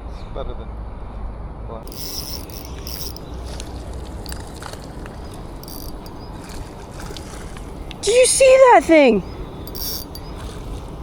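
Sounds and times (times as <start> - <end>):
spinning reel being cranked: 1.9 - 6.5, 9.6 - 10.8
faint high ticks: 1.9 - 8.0, 9.6 - 10.9.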